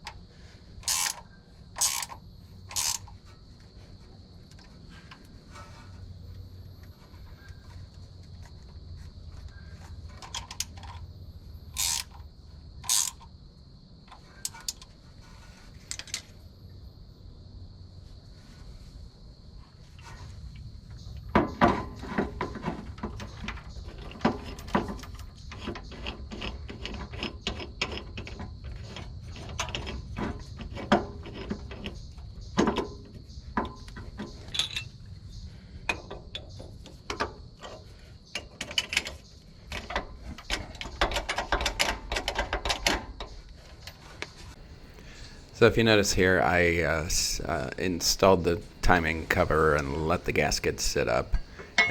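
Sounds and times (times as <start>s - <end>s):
ratchet clicking: 0.8s - 3.2s, 11.8s - 12.2s, 12.8s - 13.2s
metal tools clinking and knocking: 33.6s - 35.0s, 48.6s - 51.9s.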